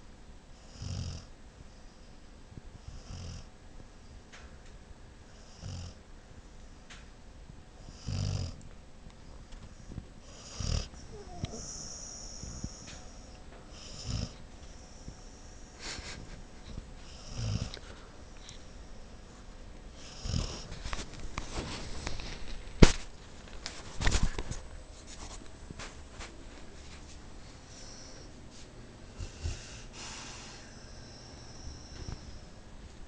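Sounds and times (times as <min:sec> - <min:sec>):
dog snoring with whistle: 0:00.6 - 0:01.3, 0:02.8 - 0:03.5, 0:05.3 - 0:06.0, 0:07.8 - 0:08.6, 0:10.2 - 0:15.7, 0:17.0 - 0:17.8, 0:20.0 - 0:20.7, 0:29.2 - 0:32.5.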